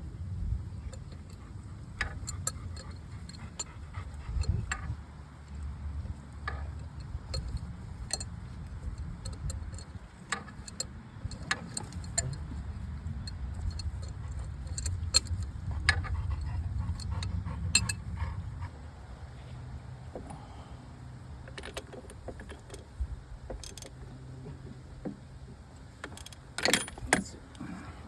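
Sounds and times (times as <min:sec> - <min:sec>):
metallic clinks of tools: 0:00.9 - 0:04.8, 0:06.5 - 0:12.4, 0:13.3 - 0:16.0, 0:16.8 - 0:18.0.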